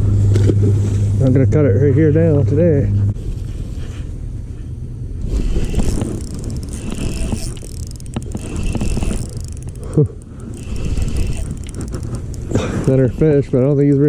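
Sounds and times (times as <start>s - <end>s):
fishing reel cranking: 5.3s - 13.9s.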